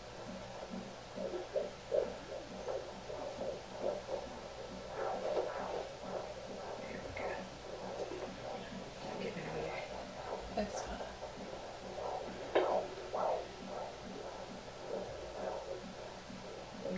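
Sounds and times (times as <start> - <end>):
fetal doppler rhythmic pulsing: 0.0 - 16.9.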